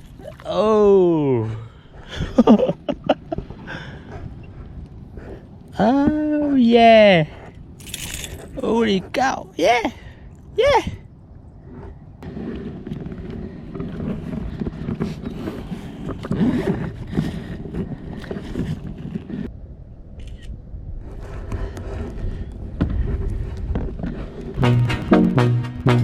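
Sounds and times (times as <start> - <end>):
handling scraping and rustling: 7.8 - 9.2.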